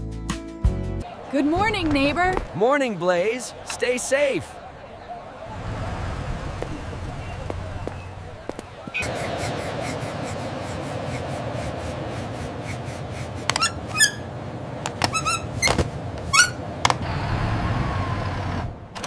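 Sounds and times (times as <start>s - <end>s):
birds chirping: 1.0s - 9.8s
steady background hum: 1.1s - 17.1s.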